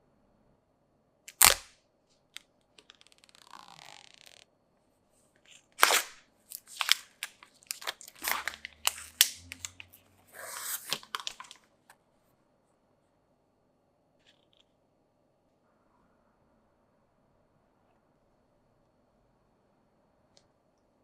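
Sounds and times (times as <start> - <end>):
packaging rustling tear: 1.3 - 1.7, 5.5 - 11.6
packaging crackling and crinkling: 5.5 - 11.6.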